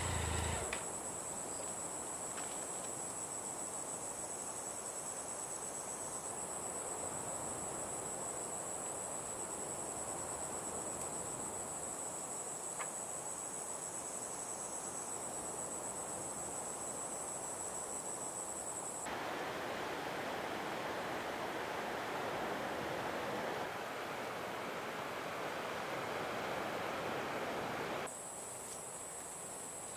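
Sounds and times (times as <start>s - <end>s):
soft rushing wash: 19.1s - 28.1s.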